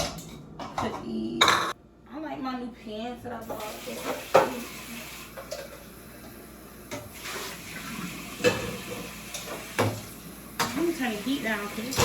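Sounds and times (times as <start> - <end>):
tap running into sink: 3.5 - 10.9.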